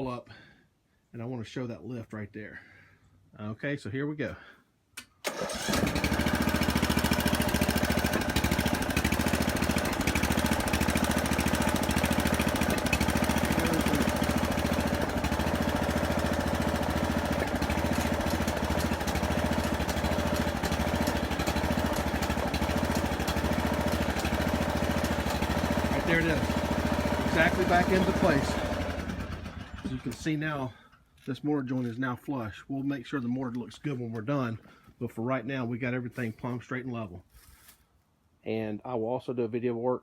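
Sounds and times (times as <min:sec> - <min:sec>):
small gasoline engine running: 0:05.3 - 0:30.2.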